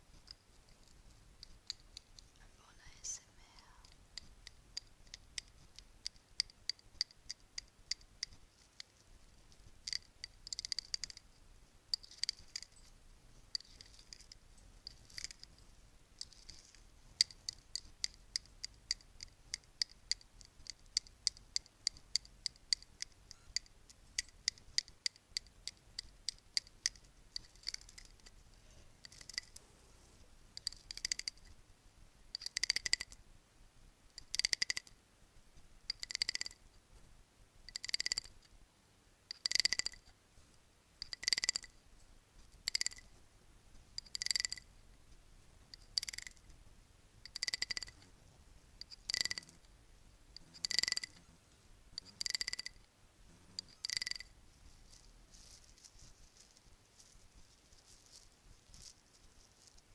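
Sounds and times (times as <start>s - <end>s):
bracelets jangling: 54.8s - 59.9s.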